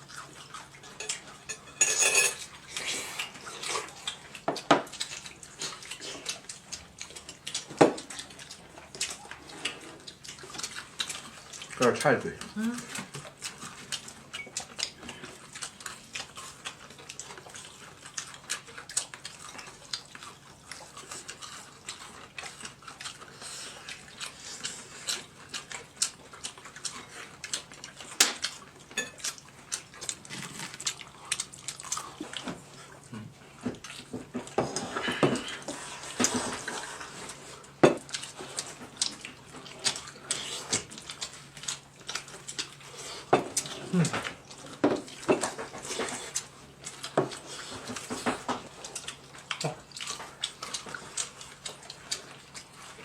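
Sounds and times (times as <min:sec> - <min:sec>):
tableware clinking: 0:01.0 - 0:02.4, 0:29.0 - 0:29.2.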